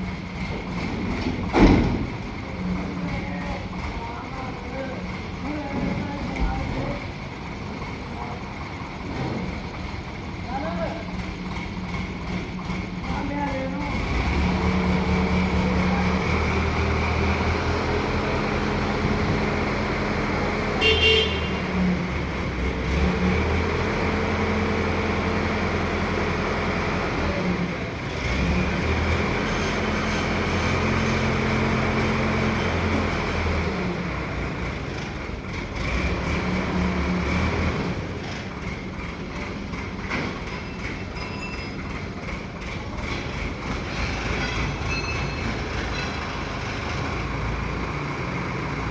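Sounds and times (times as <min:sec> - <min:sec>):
crane diesel engine revving: 0:13.9 - 0:40.0, 0:42.2 - 0:48.9.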